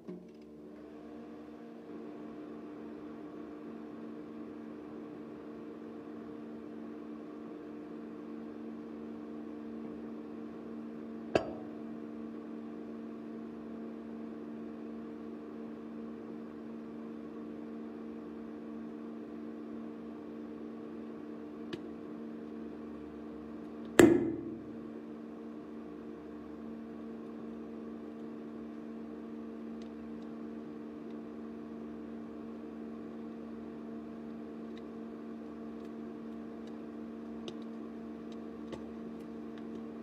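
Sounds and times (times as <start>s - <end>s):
microwave oven humming: 0.0s - 40.0s
egg bursting with a bang: 11.4s - 11.8s, 24.0s - 24.9s
sharp pop: 11.4s - 11.8s, 24.0s - 24.8s.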